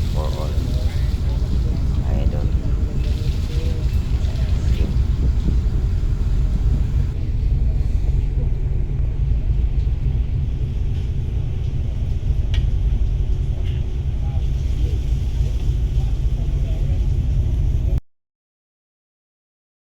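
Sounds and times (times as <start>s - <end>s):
ship engine drone: 0.0s - 13.4s.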